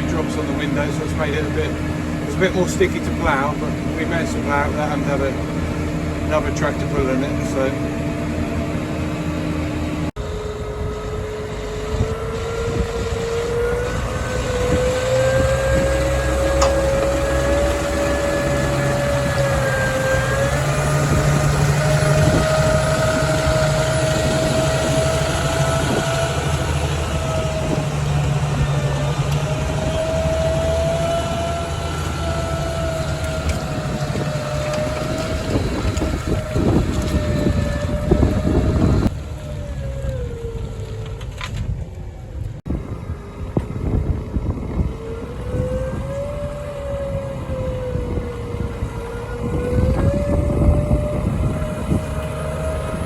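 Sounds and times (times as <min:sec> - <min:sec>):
steady whine: 0:00.0 - 0:41.6
tractor engine running under load: 0:00.0 - 0:53.0.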